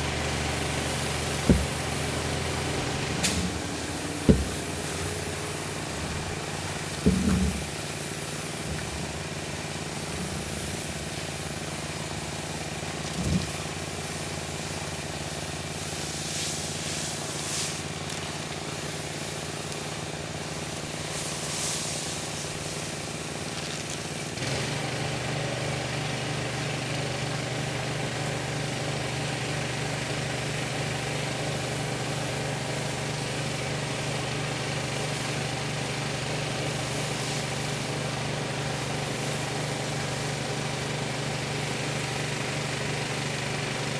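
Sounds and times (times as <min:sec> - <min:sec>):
pressure washer engine running: 0:00.0 - 0:43.9.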